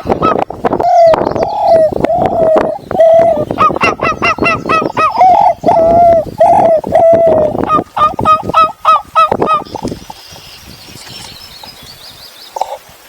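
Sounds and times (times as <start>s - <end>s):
turkeys yelping: 0.0s - 9.9s.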